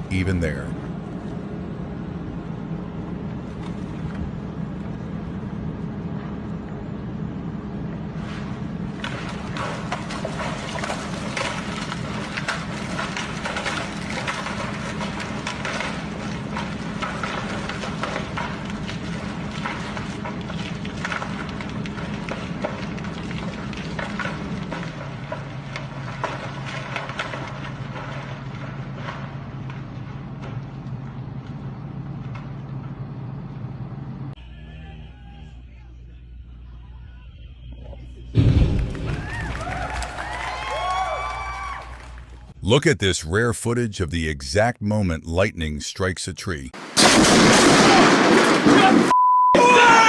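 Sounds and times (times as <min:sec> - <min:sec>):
steady low hum: 0:00.0 - 0:10.5
boulder crashing through trees: 0:46.9 - 0:49.1
wood cracking and snapping: 0:47.0 - 0:49.1.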